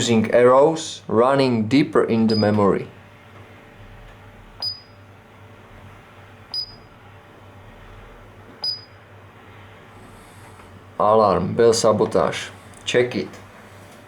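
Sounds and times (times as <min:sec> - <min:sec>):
keypad beeps: 0:02.3 - 0:02.6, 0:04.6 - 0:04.9, 0:06.5 - 0:06.9, 0:08.6 - 0:09.0.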